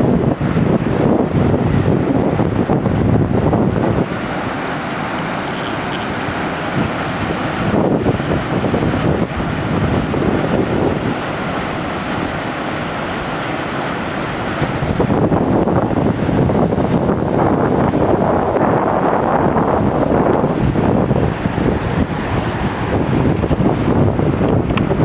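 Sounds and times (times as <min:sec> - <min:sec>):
waterfall roaring: 0:00.0 - 0:25.0
wind noise on microphone: 0:00.0 - 0:25.0.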